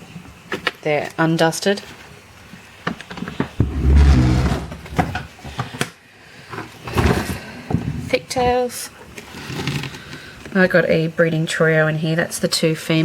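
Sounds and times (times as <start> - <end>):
plastic tub scraping on shelf: 3.6 - 5.3, 9.2 - 10.1.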